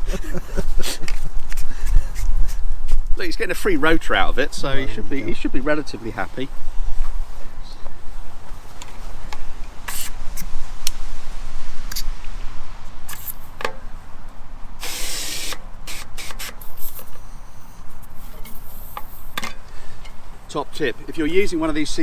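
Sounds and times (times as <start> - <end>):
gas hissing into a tyre: 9.8 - 10.6, 13.1 - 13.6, 14.8 - 20.2.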